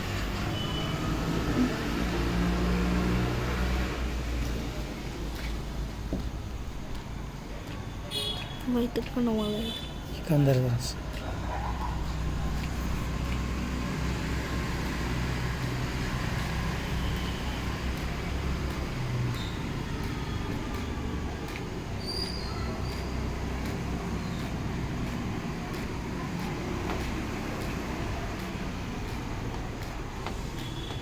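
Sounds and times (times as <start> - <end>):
low rumble of traffic: 0.0 - 31.0
faint high chirp: 19.3 - 19.7.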